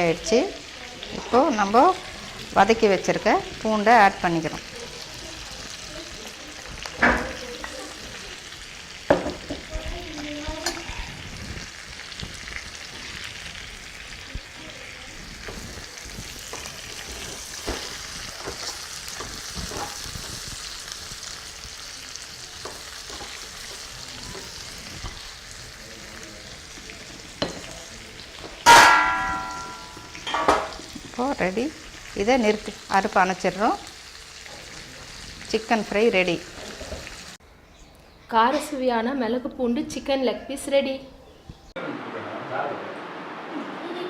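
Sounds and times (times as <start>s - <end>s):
chicken sizzling in oil: 0.0s - 37.4s
spatula scraping pan: 15.4s - 20.9s, 22.6s - 25.6s
spatula knocking against pan: 28.7s - 30.0s.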